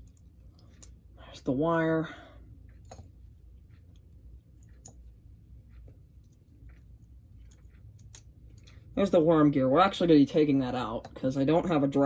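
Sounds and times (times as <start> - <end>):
light clicks of small parts: 0.0 - 1.0, 5.8 - 9.0
low steady hum: 0.0 - 12.0.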